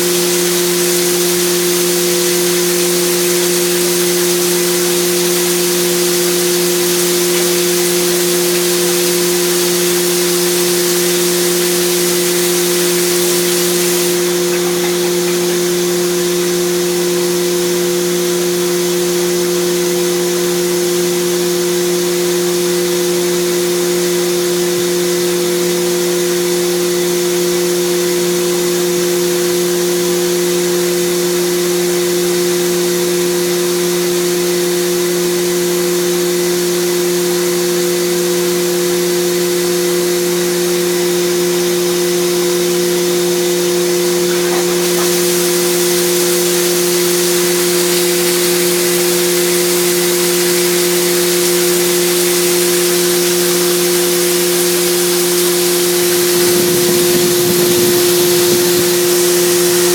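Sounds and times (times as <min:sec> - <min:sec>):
continuous hiss: 0:00.0 - 0:17.5, 0:43.6 - 0:59.9
milling machine whine: 0:00.0 - 0:24.0, 0:40.9 - 0:59.9.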